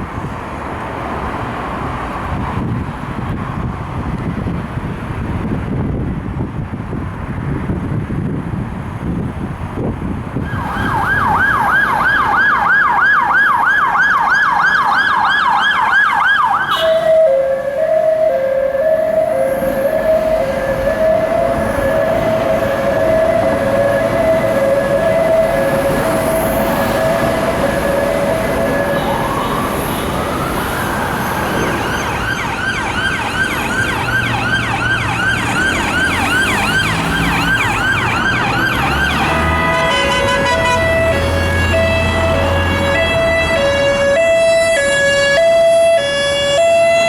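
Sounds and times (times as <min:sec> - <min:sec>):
road noise: 0:00.0 - 0:47.0
siren yelp: 0:10.4 - 0:47.0
two-tone siren: 0:10.4 - 0:47.0.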